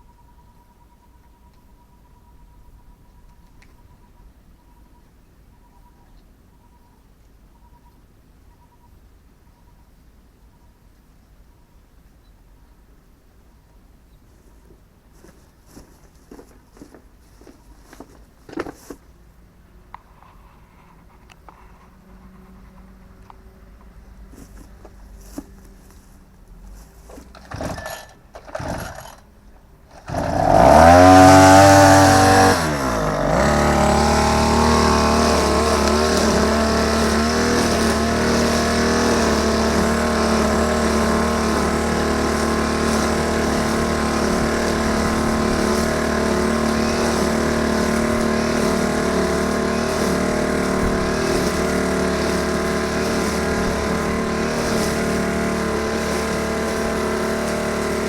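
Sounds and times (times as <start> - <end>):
lawn mower engine running: 26.7 - 58.0.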